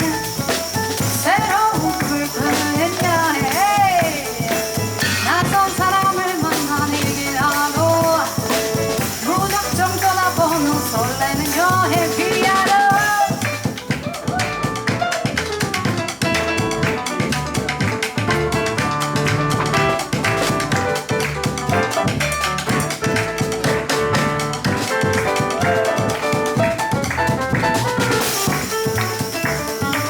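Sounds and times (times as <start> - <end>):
jazz band playing: 0.0 - 30.0
person singing: 1.2 - 8.4, 9.2 - 14.4.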